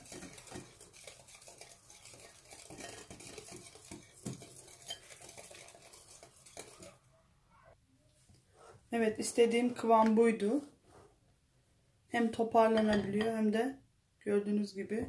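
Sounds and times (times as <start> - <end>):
whisk clicking and scraping bowl: 0.0 - 7.1, 9.0 - 10.5.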